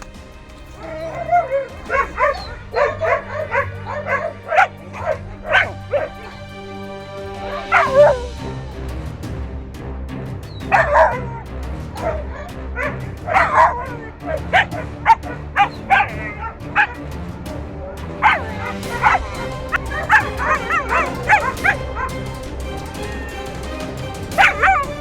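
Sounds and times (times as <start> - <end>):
dog barking in high yelps: 0.0 - 6.5, 7.4 - 8.3, 10.7 - 17.1, 18.2 - 22.3, 24.3 - 25.0
background music: 0.0 - 25.0.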